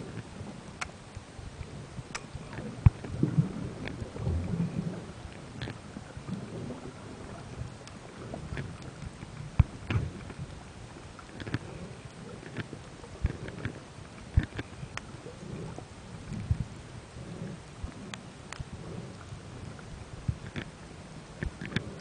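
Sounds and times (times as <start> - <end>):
underwater rumble of moving water: 0.0 - 22.0
small scattered clicks: 0.1 - 1.2, 11.2 - 15.1, 17.6 - 19.8, 20.4 - 20.8, 21.4 - 22.0.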